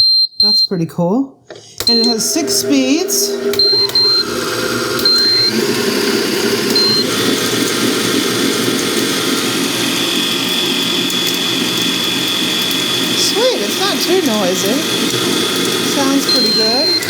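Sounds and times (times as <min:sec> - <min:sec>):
short high beeps: 0:00.0 - 0:00.7, 0:01.9 - 0:02.3, 0:03.6 - 0:04.2
stand mixer motor running: 0:01.8 - 0:17.0.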